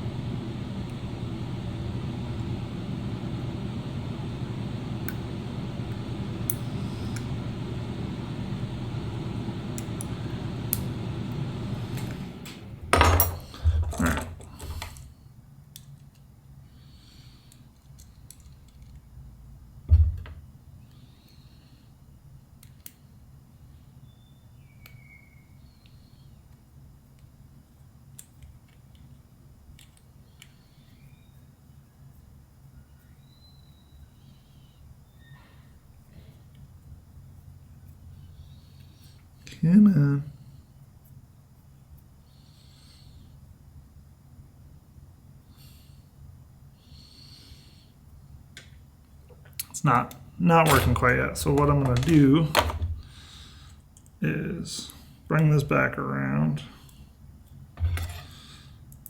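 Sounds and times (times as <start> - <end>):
low motor hum: 0.0 - 14.9
metal tools clattering on workbench: 12.9 - 14.9, 57.8 - 58.4.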